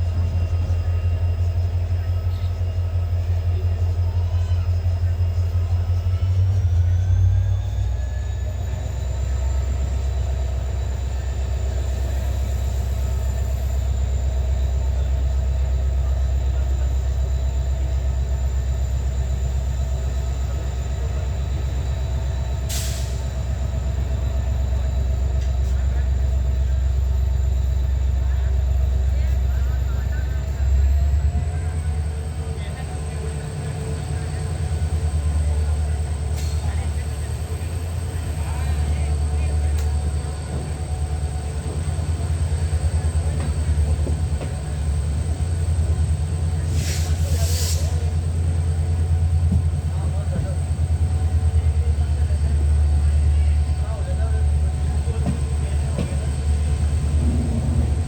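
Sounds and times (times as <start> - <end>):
diesel locomotive engine throbbing: 0.0 - 58.0
turbocharger whine: 55.2 - 58.0.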